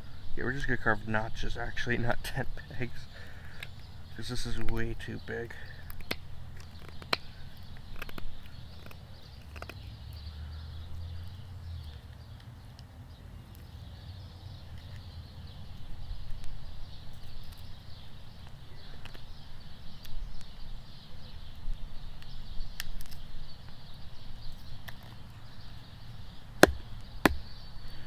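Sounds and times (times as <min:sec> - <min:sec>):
knife cutting into wood: 0:26.6 - 0:27.5.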